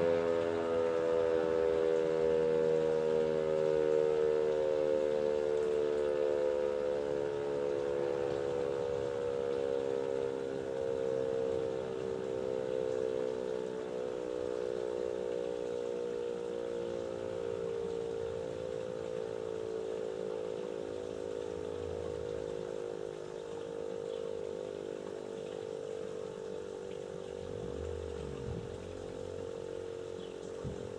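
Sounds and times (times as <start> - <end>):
warning siren steady tone: 0.0 - 30.9
faint low rumble: 26.0 - 30.9.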